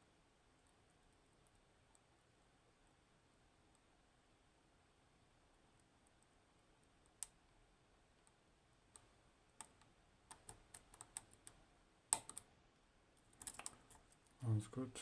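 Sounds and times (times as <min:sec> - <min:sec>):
lock pick clicking on pins: 0:13.3 - 0:14.0.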